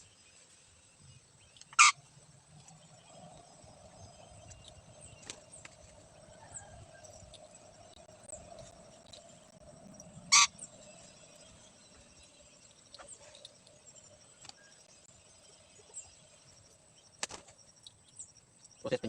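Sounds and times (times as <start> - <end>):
faint high chirps: 0.0 - 19.0
lorikeet screech: 1.7 - 2.0, 10.3 - 10.7.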